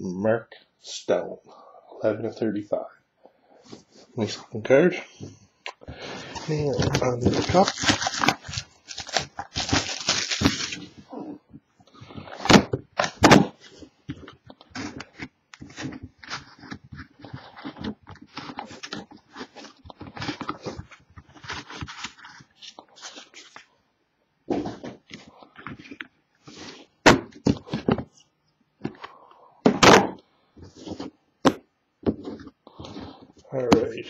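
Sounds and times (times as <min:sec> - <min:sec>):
cards clicking and rubbing: 0:05.7 - 0:11.1, 0:11.9 - 0:23.7, 0:32.1 - 0:34.0
wrapper crinkling: 0:06.3 - 0:11.1.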